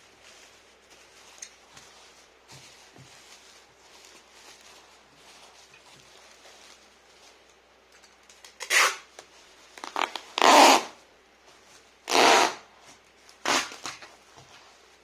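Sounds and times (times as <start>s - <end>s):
packing tape ripping: 8.4s - 11.0s, 12.1s - 12.6s, 13.4s - 14.1s.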